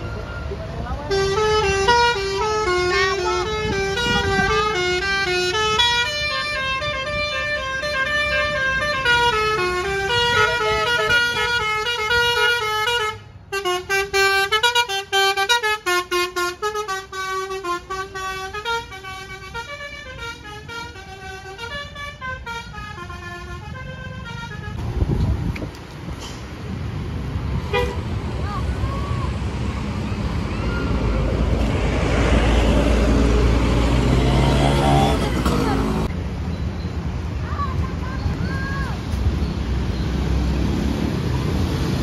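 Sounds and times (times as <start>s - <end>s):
multi-tone bus horn melody: 1.0s - 24.9s, 27.6s - 28.1s, 33.2s - 36.1s.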